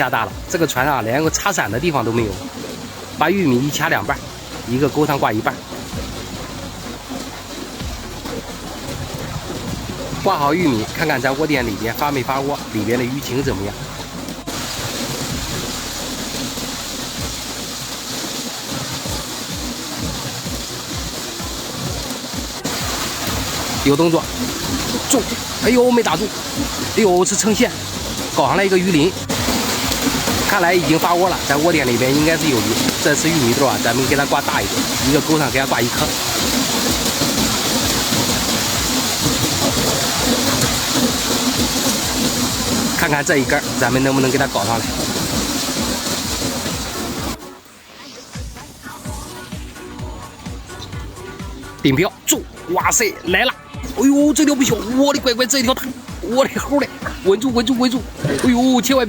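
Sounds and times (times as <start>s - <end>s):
low thuds: 0.0s - 47.4s
heavy rain on canopy: 0.0s - 59.0s.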